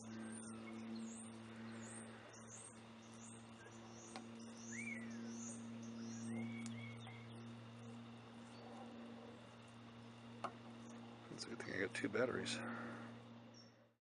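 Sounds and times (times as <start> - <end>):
birds chirping and whistling: 0.0 - 8.8, 12.8 - 13.8
steady low hum: 0.0 - 14.0.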